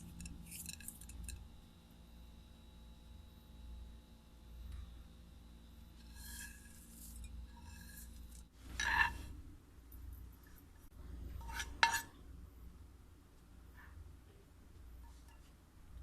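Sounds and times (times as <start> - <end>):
kitchen utensils scraping: 0.0 - 1.4, 6.0 - 9.3, 11.4 - 12.2.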